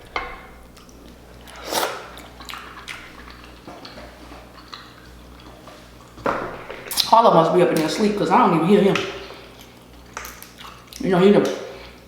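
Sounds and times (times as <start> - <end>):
wet eating noise: 0.0 - 12.0
person eating crab legs: 0.6 - 7.1
small clicks and smacks: 8.9 - 11.6.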